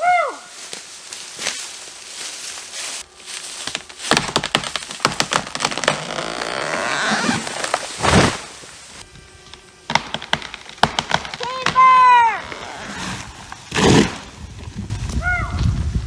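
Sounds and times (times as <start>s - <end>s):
wood cracking and splintering: 3.6s - 8.7s.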